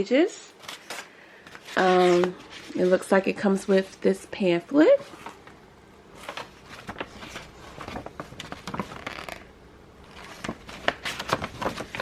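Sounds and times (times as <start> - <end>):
paper rustling and crinkling: 0.6 - 3.3, 4.9 - 5.6, 6.2 - 9.5, 10.1 - 12.0.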